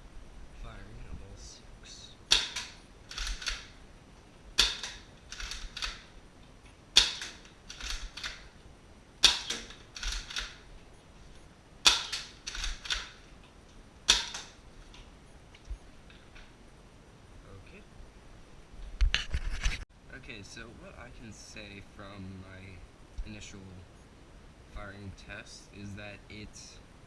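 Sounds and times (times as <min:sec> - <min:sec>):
foam-dart blaster popping: 0:04.6 - 0:06.0, 0:07.0 - 0:08.5, 0:09.2 - 0:10.6.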